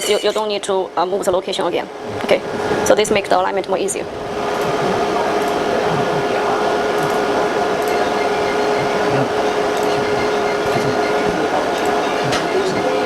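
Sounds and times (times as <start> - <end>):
fan hum: 0.0 - 13.0.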